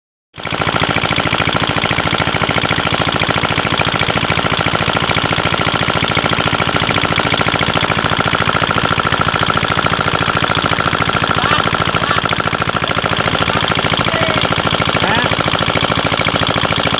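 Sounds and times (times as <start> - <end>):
engine running steadily: 0.4 - 16.9.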